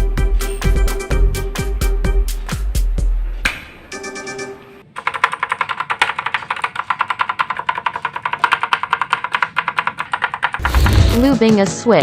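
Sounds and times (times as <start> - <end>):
background music: 0.0 - 4.8, 10.6 - 12.0
mechanical keyboard clicking: 5.0 - 10.8.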